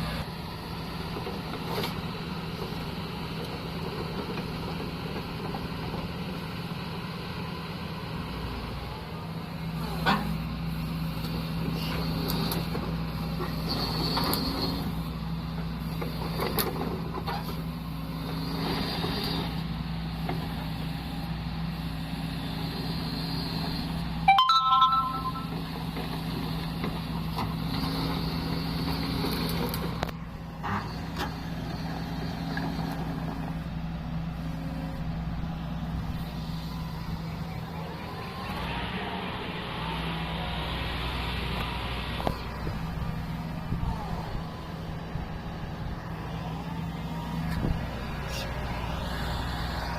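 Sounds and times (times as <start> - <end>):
heavy diesel engine running: 0.0 - 49.9
loud two-note beep: 24.3 - 25.7.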